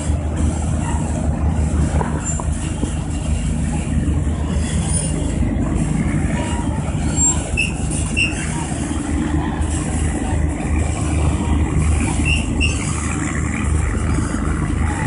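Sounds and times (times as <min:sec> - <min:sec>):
boat engine droning: 0:00.0 - 0:15.0
short high squeaks: 0:06.4 - 0:08.6, 0:12.1 - 0:13.0.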